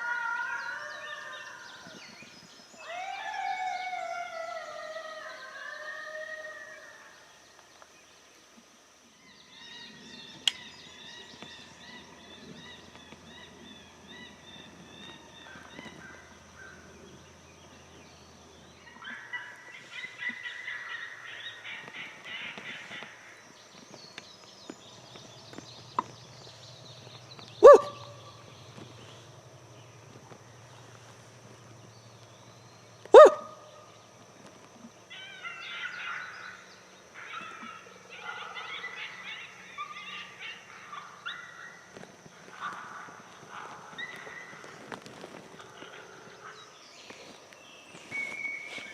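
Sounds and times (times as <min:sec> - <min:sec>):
coyote barking: 0:00.0 - 0:02.0, 0:18.8 - 0:22.6, 0:27.5 - 0:29.3, 0:33.0 - 0:33.9, 0:35.1 - 0:44.8
coyote howling: 0:00.0 - 0:07.4, 0:27.6 - 0:29.3, 0:33.1 - 0:33.9, 0:35.1 - 0:46.6
coyote yipping: 0:27.6 - 0:28.5, 0:33.1 - 0:33.8, 0:37.2 - 0:42.8, 0:43.4 - 0:45.3.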